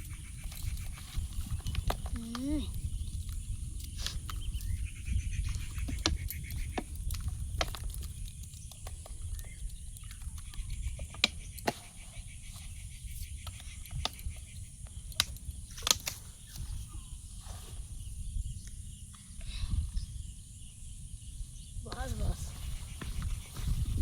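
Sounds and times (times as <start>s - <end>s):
high insect drone: 8.4s - 24.0s.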